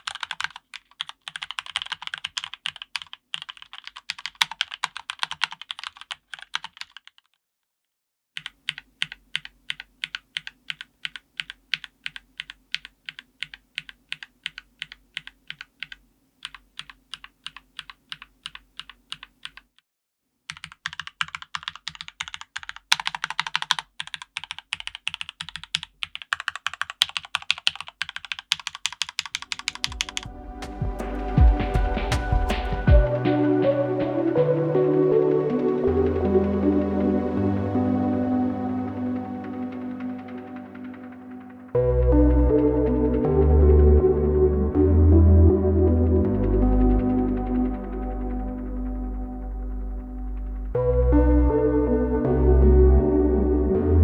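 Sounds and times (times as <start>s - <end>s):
typing on mechanical keyboard: 0.0s - 7.4s, 8.4s - 19.7s, 20.5s - 30.3s.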